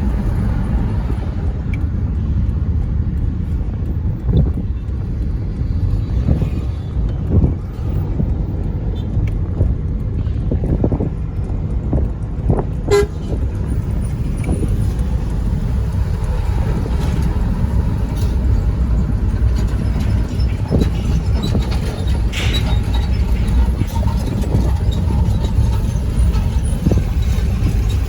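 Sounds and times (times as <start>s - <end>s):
road traffic rumble: 0.0s - 28.0s
car horn toot: 12.9s - 13.4s.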